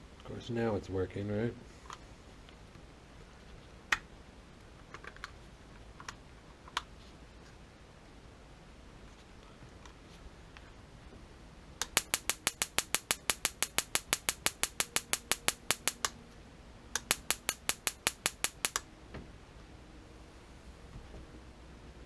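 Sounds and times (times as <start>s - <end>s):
spark generator snapping clicks: 11.8s - 16.2s, 17.0s - 18.8s.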